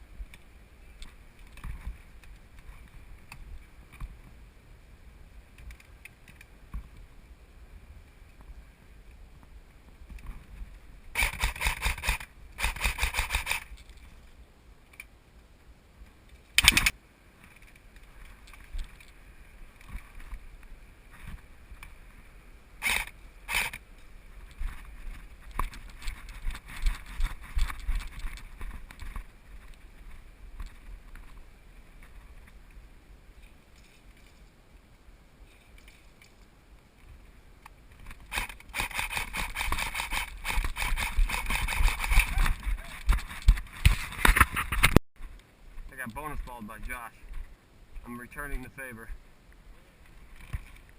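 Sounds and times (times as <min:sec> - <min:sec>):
sharp cracks: 0:11.1 - 0:14.0, 0:16.5 - 0:17.0, 0:22.8 - 0:23.8, 0:38.2 - 0:45.0
airsoft rifle full-auto bursts: 0:11.2 - 0:13.7, 0:22.8 - 0:23.8.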